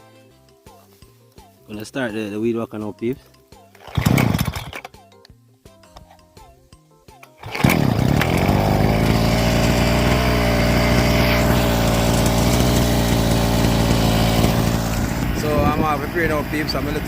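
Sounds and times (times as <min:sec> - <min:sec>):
weed whacker engine running: 0:03.8 - 0:04.8, 0:07.4 - 0:17.0.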